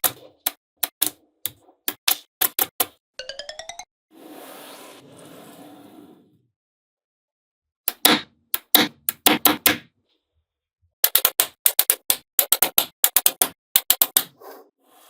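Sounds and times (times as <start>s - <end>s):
magnetic balls clicking together: 11.0s - 14.3s.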